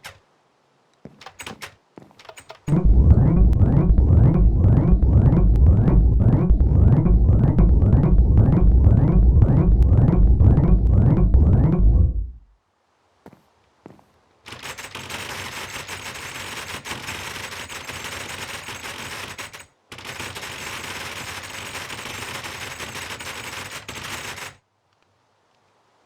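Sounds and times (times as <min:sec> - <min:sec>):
harsh rapid clicks: 0:01.2 - 0:12.4.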